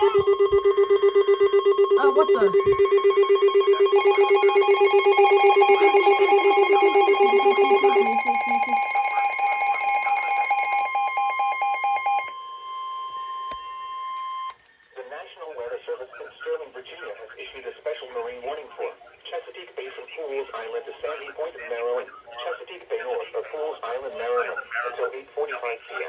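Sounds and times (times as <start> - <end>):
pulsing electronic alert tones: 0.0 - 15.1
steady high alert tone: 0.0 - 16.3.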